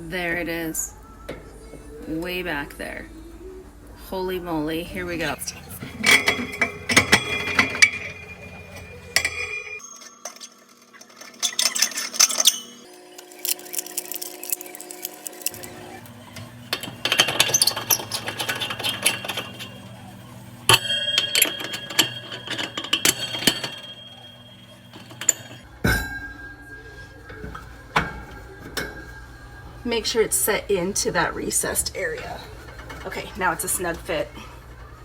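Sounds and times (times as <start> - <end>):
glass and metal clicking: 5.2 - 26.3.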